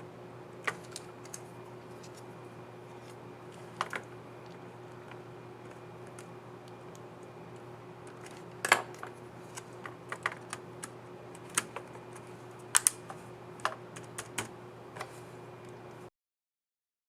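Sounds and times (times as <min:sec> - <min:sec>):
steady low hum: 0:00.0 - 0:16.1
laptop keys clicking: 0:13.7 - 0:14.5.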